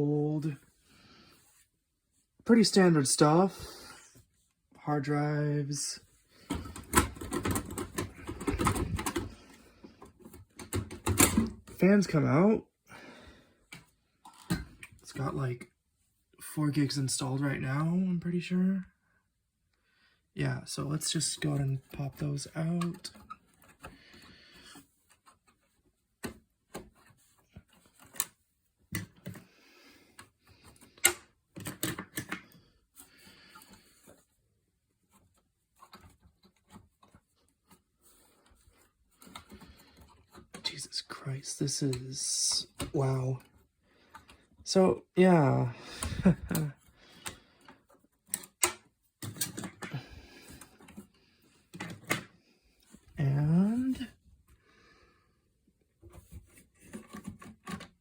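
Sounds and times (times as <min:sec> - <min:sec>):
plastic clicks of memory modules: 0:06.5 - 0:09.4, 0:48.2 - 0:51.0.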